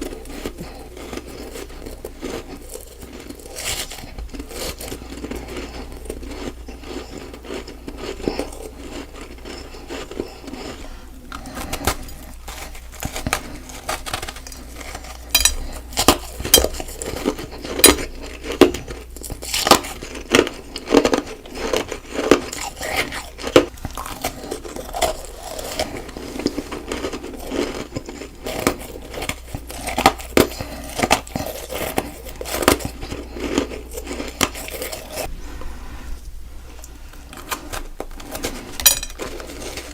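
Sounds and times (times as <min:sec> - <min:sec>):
crunchy ice chewing: 0:00.0 - 0:35.3, 0:37.3 - 0:39.9.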